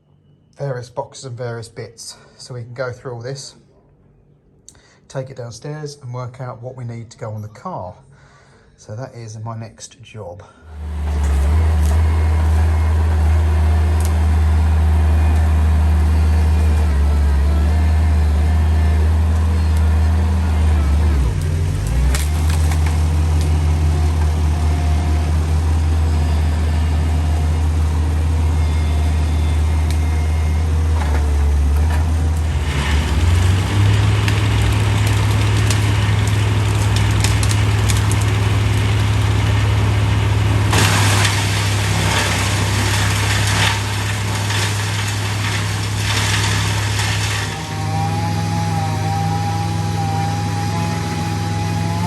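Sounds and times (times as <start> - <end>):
vehicle engine idling: 10.6 - 52.0.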